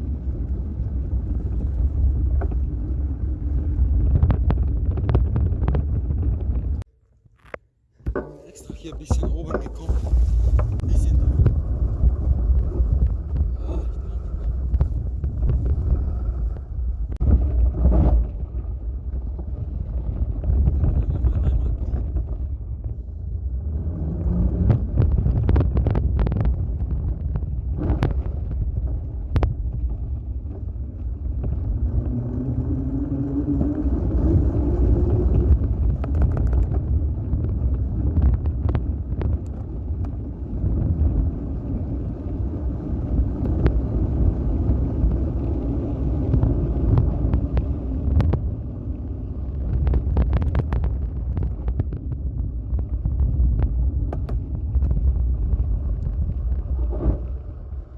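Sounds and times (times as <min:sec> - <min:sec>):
tyres rumbling on dirt track: 0:00.0 - 0:06.8, 0:08.1 - 0:57.9
wind buffeting microphone: 0:00.0 - 0:06.9, 0:08.5 - 0:57.9
bike knocks and rattles: 0:01.8 - 0:13.6, 0:35.2 - 0:40.8.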